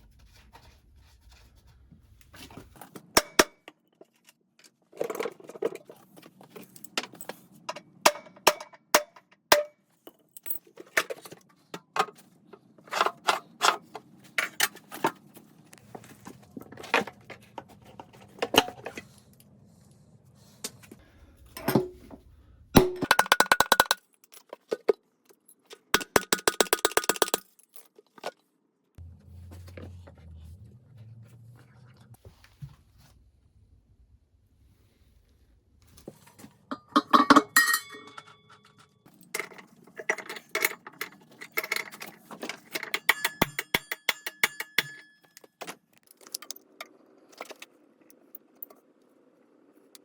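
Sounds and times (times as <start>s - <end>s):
low steady hum: 29.0s - 38.8s
metal tools clinking and knocking: 36.7s - 46.6s.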